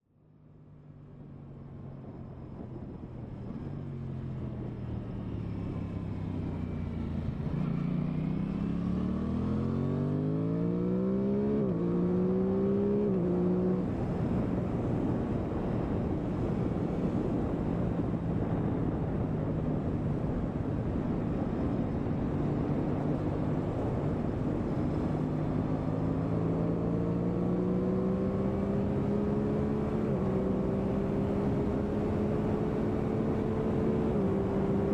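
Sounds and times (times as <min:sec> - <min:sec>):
motorcycle engine revving: 0:07.6 - 0:13.9, 0:24.8 - 0:34.9.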